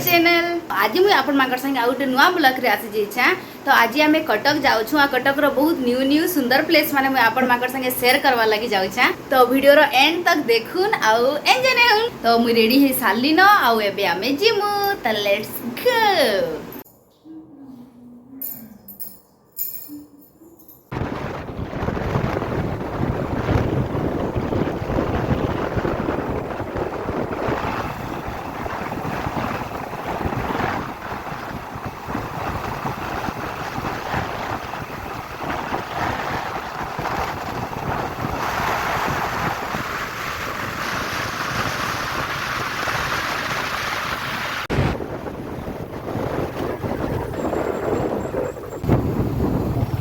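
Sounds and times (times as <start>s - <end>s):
low rumble of travel: 20.9s - 50.0s
wind buffeting the microphone: 20.9s - 50.0s.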